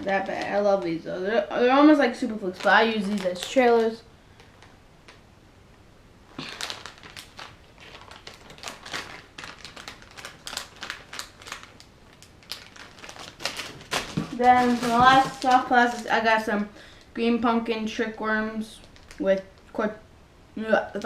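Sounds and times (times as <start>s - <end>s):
plastic packaging crinkling: 0.0s - 1.0s, 2.1s - 5.2s, 6.3s - 17.1s, 18.6s - 19.8s.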